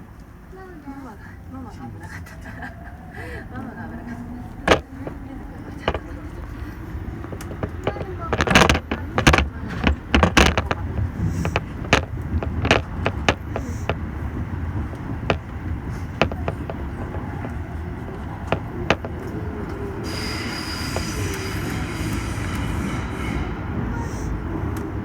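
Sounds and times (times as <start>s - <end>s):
subway train rumble: 0.0s - 25.0s
wheel clicks over rail joints: 4.7s - 21.7s.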